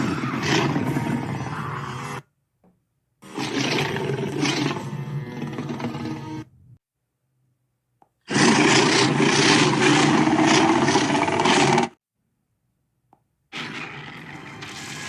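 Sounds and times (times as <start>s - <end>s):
dinosaur roar: 0.0s - 2.2s, 3.2s - 6.5s, 8.3s - 12.0s, 13.6s - 15.0s.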